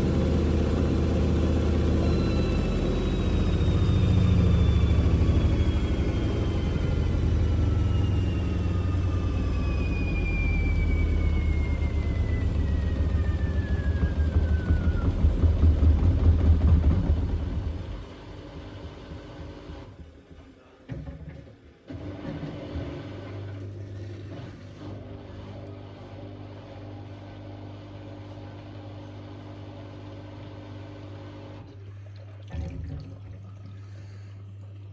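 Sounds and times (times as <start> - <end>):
motor whine falling in pitch: 0.0 - 20.0
washing machine spinning: 0.0 - 20.3, 21.6 - 34.9
low machine hum: 0.0 - 34.9
washing machine drum rumbling: 13.0 - 19.8.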